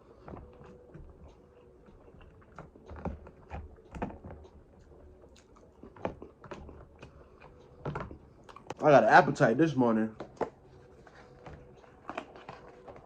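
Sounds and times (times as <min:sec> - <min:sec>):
person chewing food: 0:00.0 - 0:08.8, 0:10.2 - 0:13.0
wet mouth clicks and crunches: 0:08.4 - 0:08.8.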